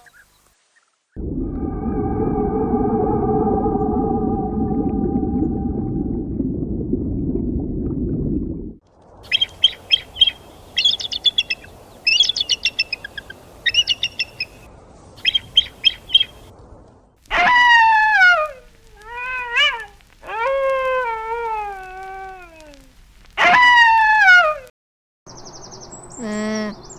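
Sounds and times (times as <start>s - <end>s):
falling animal calls: 9.3s - 14.6s
small birds chirping: 9.3s - 14.6s, 15.2s - 16.5s, 25.3s - 26.9s.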